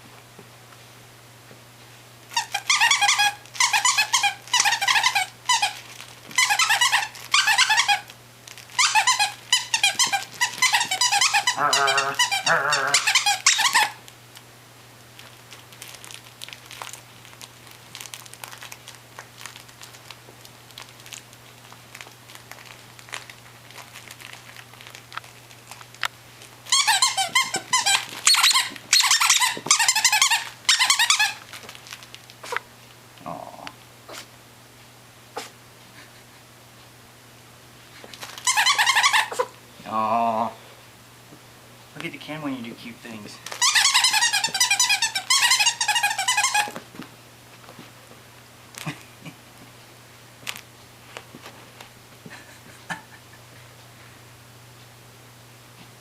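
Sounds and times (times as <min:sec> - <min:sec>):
squeaky dog toy squeaking: 0:02.3 - 0:05.8, 0:06.4 - 0:08.1, 0:08.7 - 0:14.0, 0:26.7 - 0:31.4, 0:38.4 - 0:39.5, 0:43.6 - 0:46.8.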